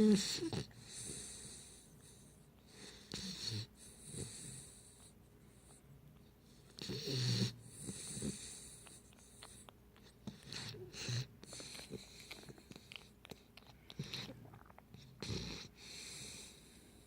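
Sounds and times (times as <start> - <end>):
puppy snoring: 0.0 - 5.8, 6.5 - 17.0.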